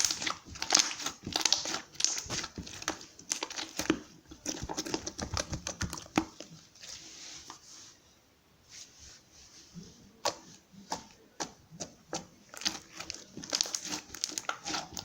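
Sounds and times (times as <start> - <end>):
crinkling and rustling: 0.0 - 8.0, 8.8 - 15.0.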